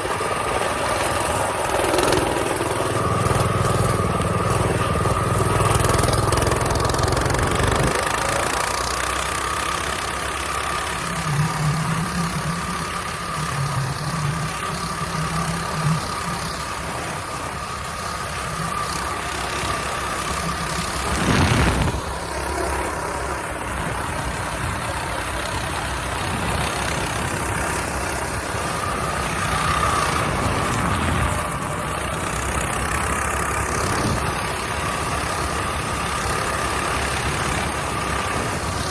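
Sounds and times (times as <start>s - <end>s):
small engine running: 0.0s - 38.9s
brief loud disturbance: 21.1s - 22.1s.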